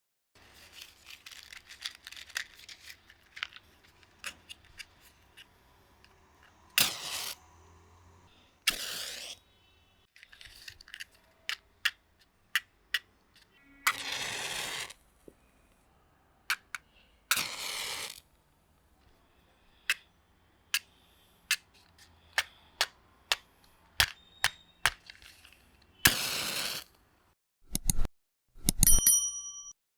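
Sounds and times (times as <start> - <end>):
match striking and flaring: 6.7 - 7.4, 8.7 - 9.4, 13.9 - 15.0, 17.3 - 18.2, 24.9 - 27.0
matchbox clicks and taps: 16.5 - 18.0, 21.5 - 26.7.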